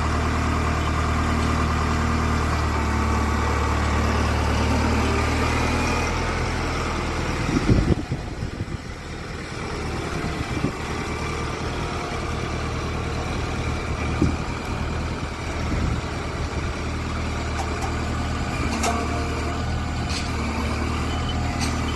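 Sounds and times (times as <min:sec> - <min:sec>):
heavy engine idling: 0:00.0 - 0:21.9
loud clunk: 0:18.6 - 0:19.5.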